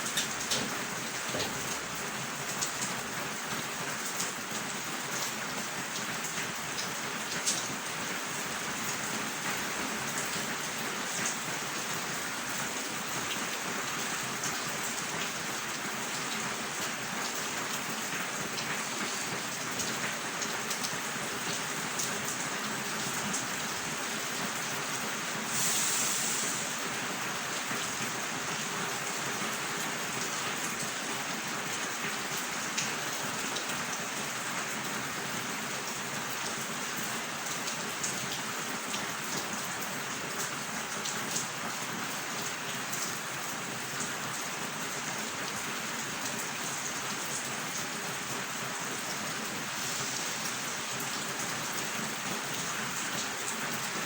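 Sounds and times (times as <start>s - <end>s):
steady rain hiss: 0.0s - 54.0s.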